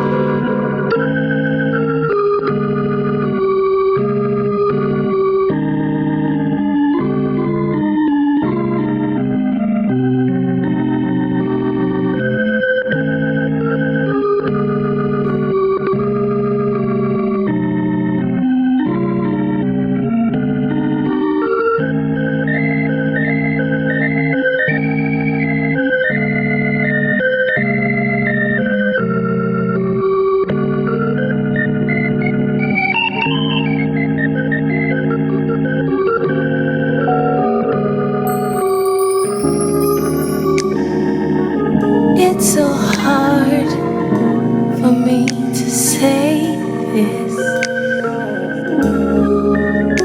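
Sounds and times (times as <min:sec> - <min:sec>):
organ playing held chords: 0:00.0 - 0:09.3, 0:35.2 - 0:50.0.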